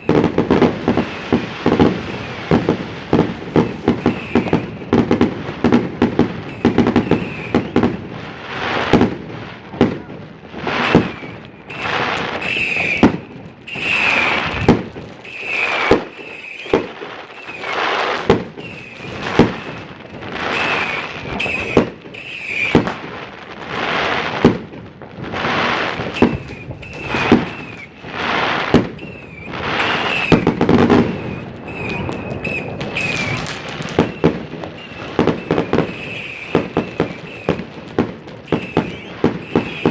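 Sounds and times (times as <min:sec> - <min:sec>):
crackling bursts: 0:00.0 - 0:09.0, 0:10.5 - 0:39.9
firework bangs: 0:00.0 - 0:39.9
short high whistles: 0:03.9 - 0:04.6, 0:06.5 - 0:07.8, 0:10.8 - 0:17.9, 0:18.6 - 0:19.9, 0:20.5 - 0:22.8, 0:26.0 - 0:27.9, 0:29.0 - 0:37.6, 0:38.5 - 0:39.9.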